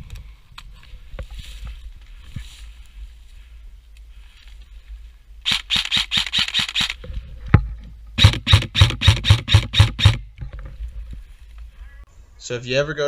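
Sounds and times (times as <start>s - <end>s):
airsoft rifle shots: 5.5s - 7.0s, 8.2s - 10.2s.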